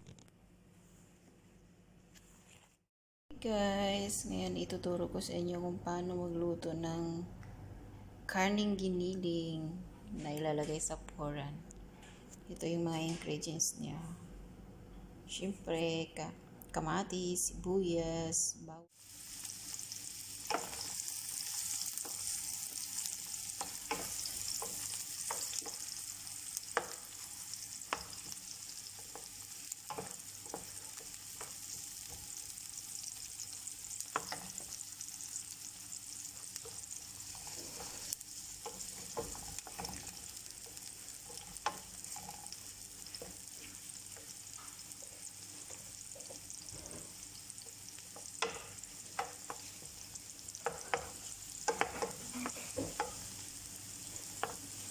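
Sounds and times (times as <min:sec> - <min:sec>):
food sizzling in hot oil: 0:18.9 - 0:54.9
spatula scraping a pan: 0:37.2 - 0:44.0, 0:50.6 - 0:53.2.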